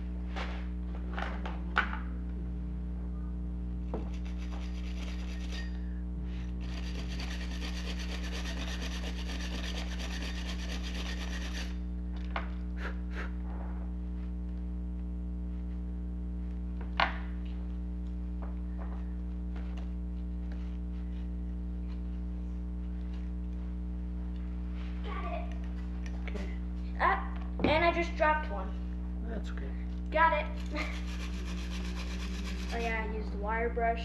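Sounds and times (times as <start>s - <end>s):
steady low hum: 0.0s - 34.0s
wire brush scraping: 4.1s - 11.8s, 30.6s - 33.1s.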